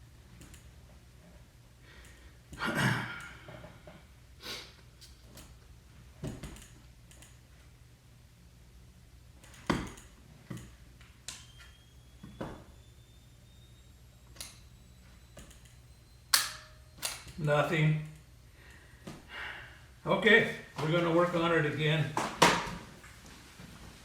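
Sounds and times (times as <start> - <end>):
flash charging whine: 9.5 - 19.0.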